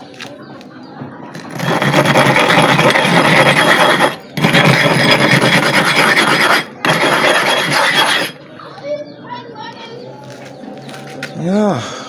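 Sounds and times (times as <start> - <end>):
sharpening stone scraping: 1.4 - 8.4.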